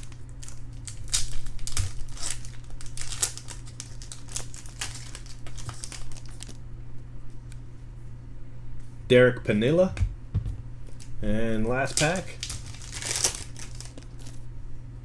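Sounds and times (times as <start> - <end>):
trading cards crinkling and rustling: 0.0 - 6.6, 10.8 - 14.5.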